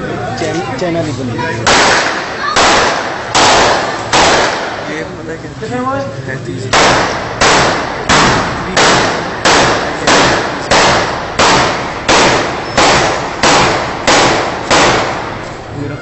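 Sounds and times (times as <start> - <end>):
gun shots echoing: 1.6 - 5.1, 6.7 - 15.6.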